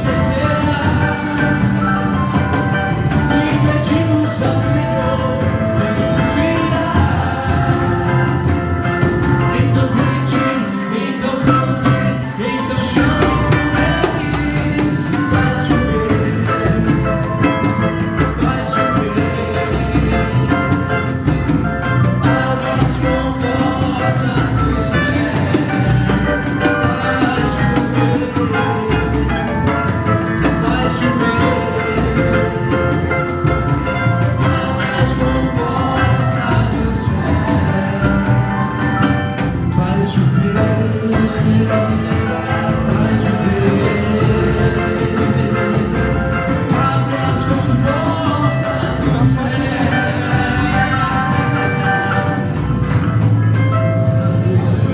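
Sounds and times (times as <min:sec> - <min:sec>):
people singing: 0:00.0 - 0:53.5, 0:54.2 - 0:54.9
percussion beat: 0:00.0 - 0:54.9
samba gospel band playing: 0:00.0 - 0:54.9.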